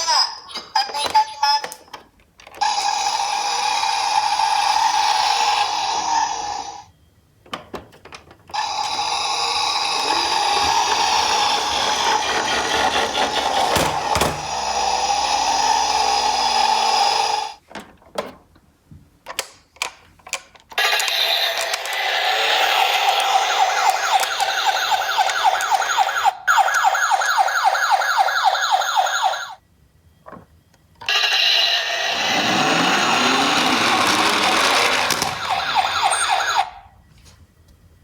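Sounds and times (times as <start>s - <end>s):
toy cars whirring on plastic track: 2.6s - 6.9s, 8.5s - 17.6s, 20.7s - 26.9s, 31.0s - 36.8s
plastic clicks and clacks: 17.7s - 22.0s.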